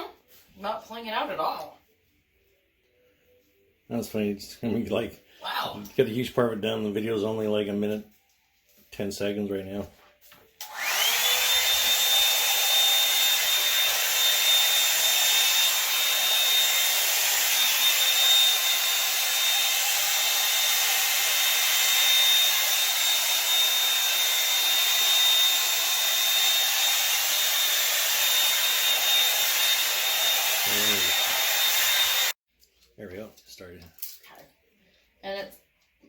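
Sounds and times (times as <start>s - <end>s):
hair dryer brush running: 10.6s - 32.4s.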